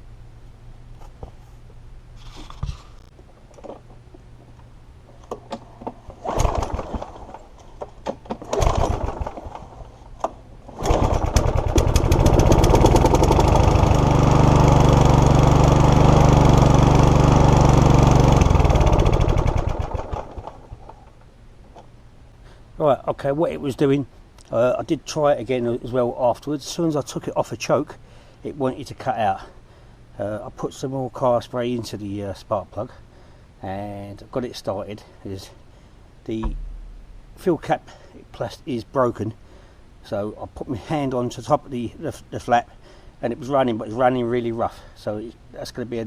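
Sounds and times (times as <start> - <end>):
mower engine pull-start: 5.2 - 21.0
small petrol engine running: 6.2 - 7.4, 8.5 - 9.8, 10.7 - 20.8.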